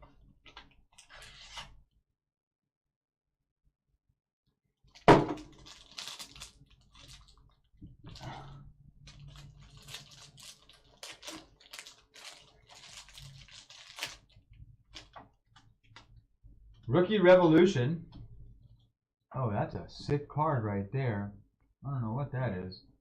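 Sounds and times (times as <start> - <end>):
wrapper and cardboard crinkling: 4.9 - 16.2.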